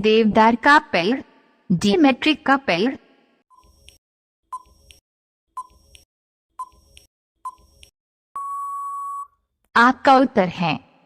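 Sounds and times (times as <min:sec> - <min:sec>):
long steady beep: 0:08.4 - 0:09.4.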